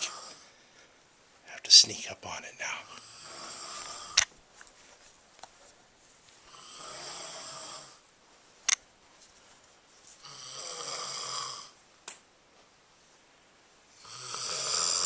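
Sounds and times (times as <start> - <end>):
person snoring: 0.0 - 0.6, 2.6 - 4.2, 6.5 - 8.0, 10.2 - 11.8, 14.0 - 15.0.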